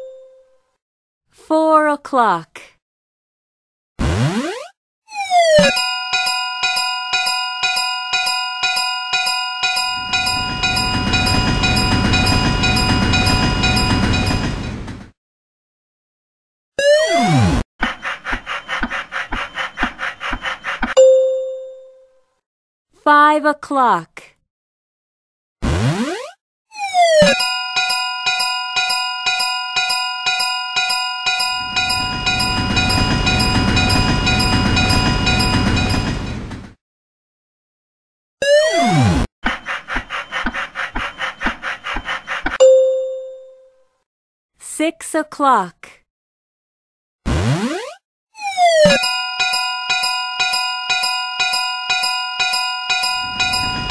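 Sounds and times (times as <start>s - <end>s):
railroad crossing bell ringing: 5.6s - 14.7s, 27.3s - 36.4s, 42.6s - 43.6s, 48.9s - 53.9s.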